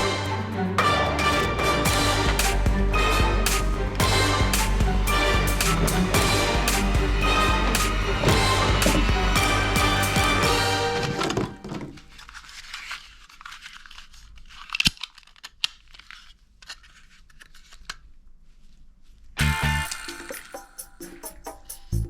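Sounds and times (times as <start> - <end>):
background music: 0.0 - 12.0, 19.4 - 22.0
plastic rustling and clicking: 11.0 - 19.3
plastic snapping: 14.5 - 18.0.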